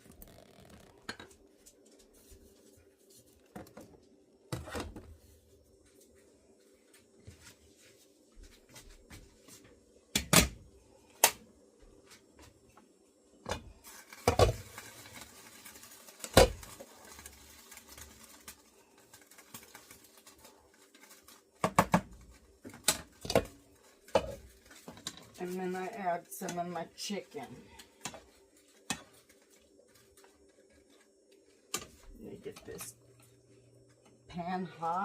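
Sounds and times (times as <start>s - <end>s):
faint steady hum: 0.0s - 35.0s.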